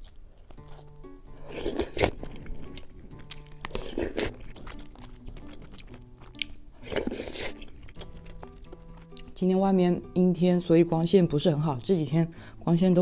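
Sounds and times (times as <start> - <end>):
person chewing and biting food: 0.0 - 9.4
soft background music: 0.0 - 13.0.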